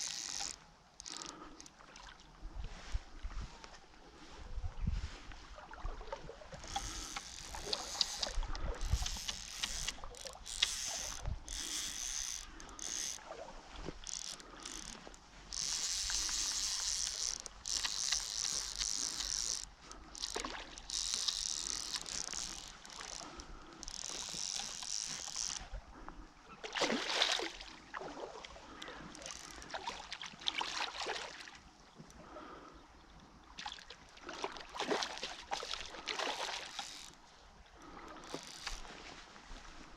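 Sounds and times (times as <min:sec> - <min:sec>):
water splashing and rushing: 0:26.6 - 0:28.6.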